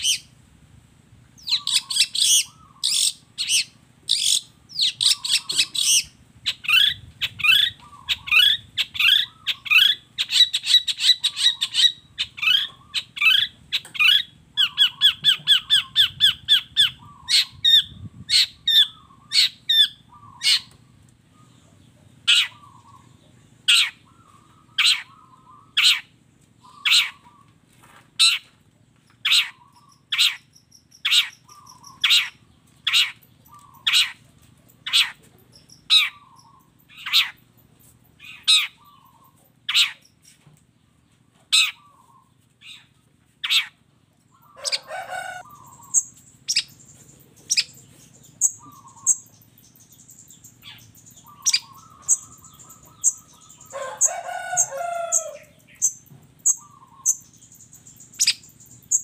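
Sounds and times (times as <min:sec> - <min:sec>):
high-pitched bird chattering: 0:00.0 - 0:00.3, 0:01.4 - 0:20.8, 0:22.2 - 0:27.5, 0:28.2 - 0:28.5, 0:29.1 - 0:40.5, 0:41.5 - 0:59.0
bird call notes: 0:43.5 - 0:59.0.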